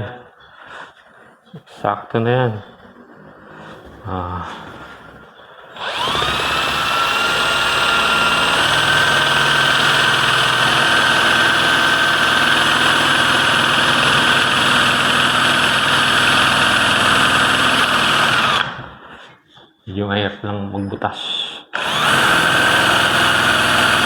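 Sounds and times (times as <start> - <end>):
electric drill boring wood: 5.7 - 19.1, 21.7 - 24.0.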